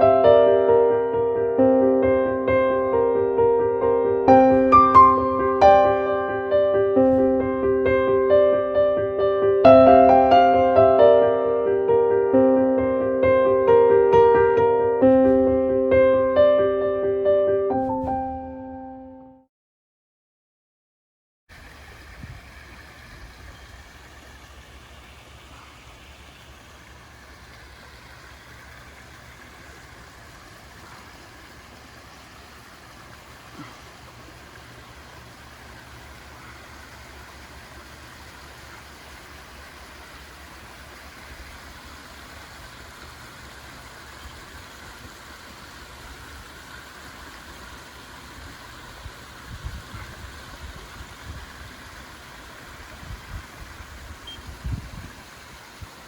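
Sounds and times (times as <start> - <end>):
waterfall trickling and splashing: 4.0 - 8.5, 9.6 - 12.1, 13.7 - 16.0, 21.5 - 56.0.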